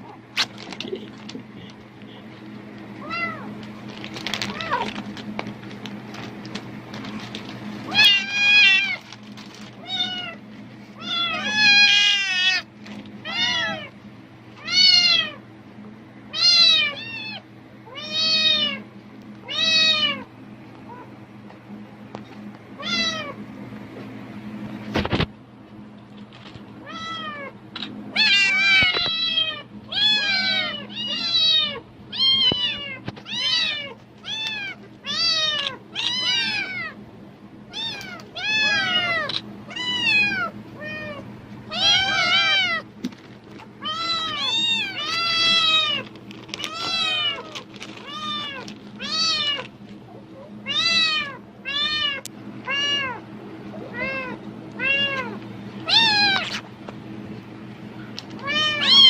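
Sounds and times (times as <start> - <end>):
cat meowing: 3.0 - 3.5, 7.9 - 9.0, 11.0 - 13.9, 28.1 - 37.0, 37.7 - 42.8, 43.8 - 46.0, 46.6 - 49.6, 53.8 - 56.6, 58.4 - 59.0.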